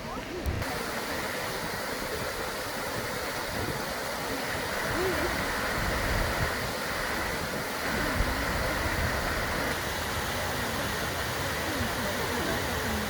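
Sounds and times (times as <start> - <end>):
wind buffeting microphone: 0.0 - 9.8
rushing water: 0.0 - 13.0.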